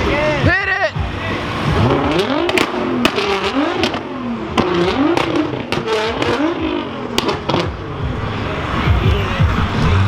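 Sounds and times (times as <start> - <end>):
car engine revving: 0.0 - 10.0
exhaust pops and cracks: 1.8 - 7.8.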